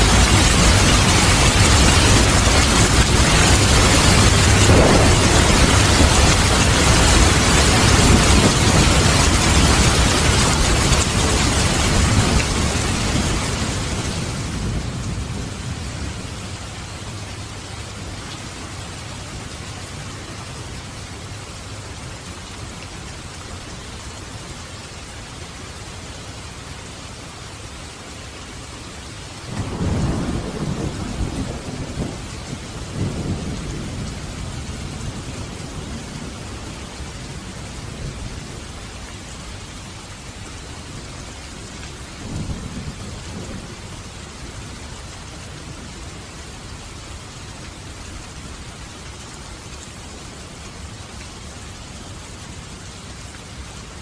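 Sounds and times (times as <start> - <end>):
thunder rumbling: 0.0 - 17.1, 29.5 - 38.8
steady rain: 0.0 - 54.0.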